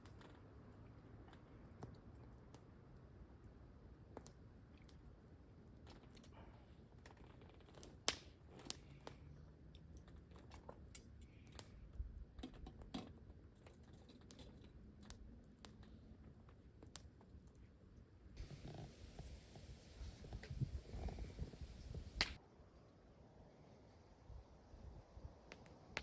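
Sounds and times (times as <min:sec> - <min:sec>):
wood fire crackling: 0:00.0 - 0:22.4
low wind rumble: 0:18.4 - 0:22.4.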